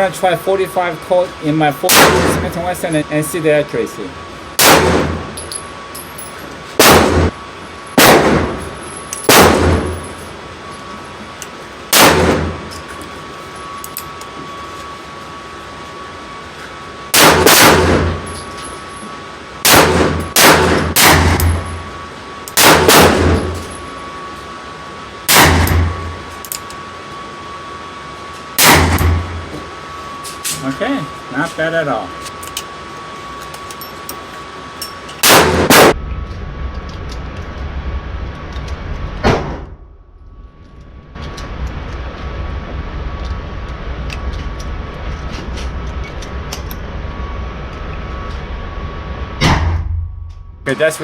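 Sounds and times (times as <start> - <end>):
handgun shots: 4.6 - 5.2, 8.0 - 8.6, 17.2 - 18.1, 19.7 - 21.6, 25.3 - 26.0.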